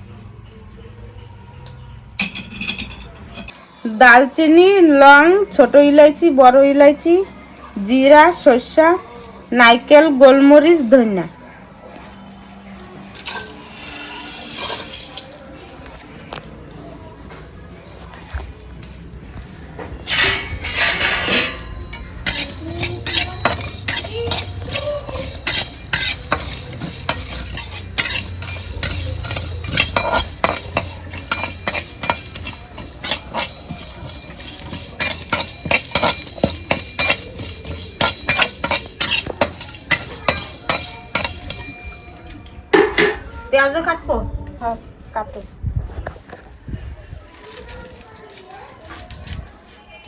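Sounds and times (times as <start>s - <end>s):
metal spoon scraping a pot: 13.2s - 15.4s, 20.0s - 42.2s
steady sizzle: 13.3s - 15.4s, 22.2s - 42.1s.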